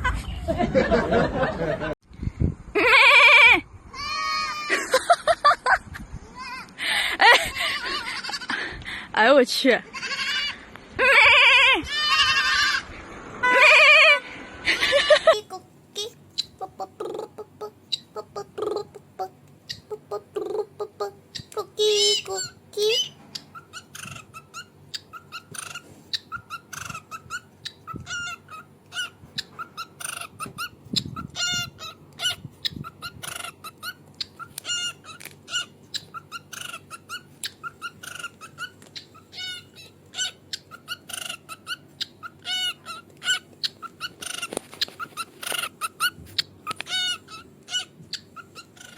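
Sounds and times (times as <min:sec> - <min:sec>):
high chirping calls: 0:21.3 - 0:48.9.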